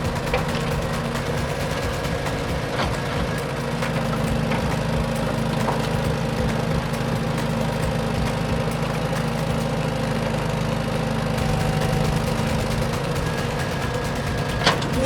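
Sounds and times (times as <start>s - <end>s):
vehicle engine idling: 0.0s - 15.0s.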